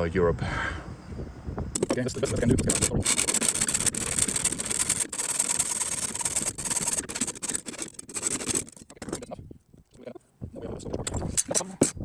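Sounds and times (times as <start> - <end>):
hand tool scraping metal: 1.8 - 9.3, 10.8 - 12.0.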